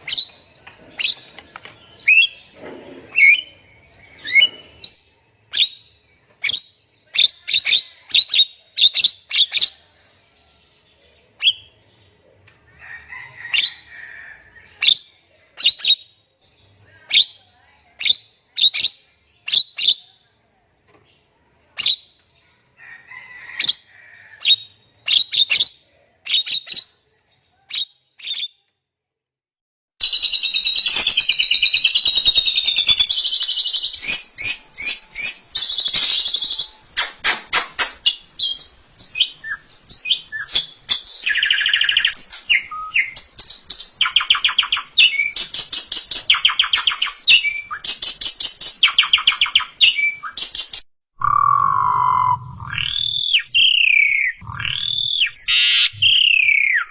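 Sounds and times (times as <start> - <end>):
myna calling: 51.2 - 56.9.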